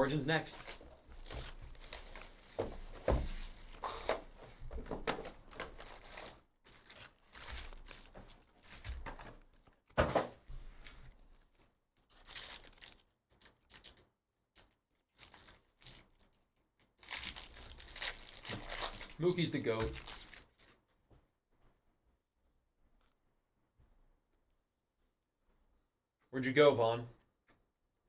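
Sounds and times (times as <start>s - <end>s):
packaging tearing and crinkling: 0.0s - 4.2s, 5.0s - 9.5s, 12.1s - 14.0s, 14.6s - 16.3s, 16.9s - 20.7s.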